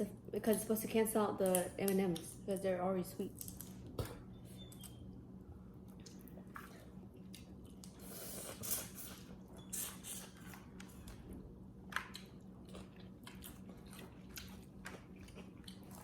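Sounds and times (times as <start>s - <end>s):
person chewing: 5.8s - 16.0s.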